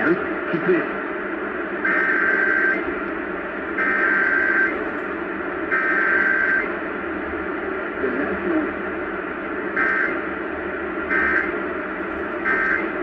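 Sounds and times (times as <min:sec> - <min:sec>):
two-tone data squeal: 0:01.9 - 0:06.7, 0:11.1 - 0:13.0
radio static hiss: 0:03.2 - 0:06.8, 0:11.2 - 0:13.0.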